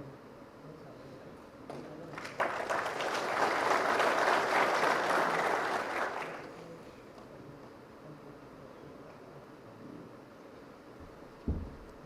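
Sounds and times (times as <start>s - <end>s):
audience clapping: 1.7s - 6.6s.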